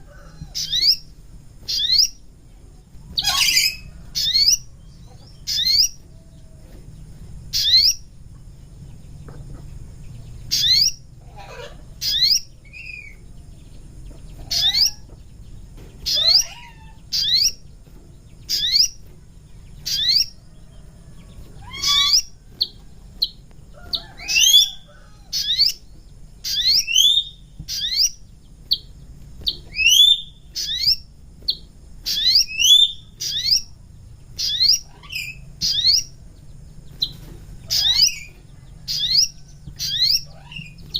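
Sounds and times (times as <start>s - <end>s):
faint low hum: 0.0s - 40.9s
bird chirping sharply: 1.6s - 2.2s, 3.1s - 6.0s, 10.5s - 13.2s, 14.4s - 15.2s, 16.0s - 17.6s, 18.4s - 19.0s, 19.7s - 20.4s, 24.0s - 28.9s, 29.5s - 33.7s, 34.4s - 36.1s, 36.9s - 40.9s.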